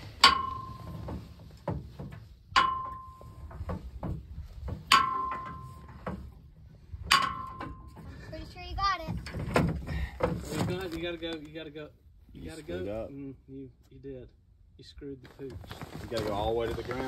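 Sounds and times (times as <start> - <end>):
metal-on-metal strikes ringing: 0.2 - 1.1, 2.6 - 3.5, 4.9 - 6.0, 7.1 - 8.0.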